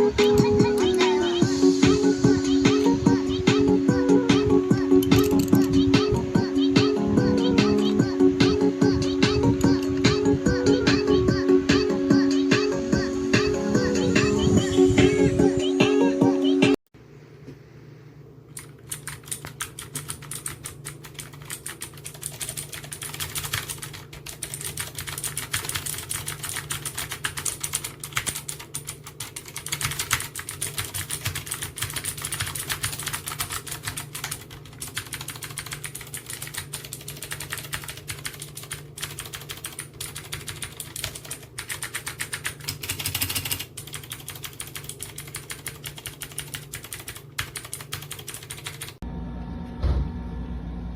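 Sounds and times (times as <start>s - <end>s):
mechanical keyboard typing: 5.0s - 5.8s, 18.6s - 49.0s.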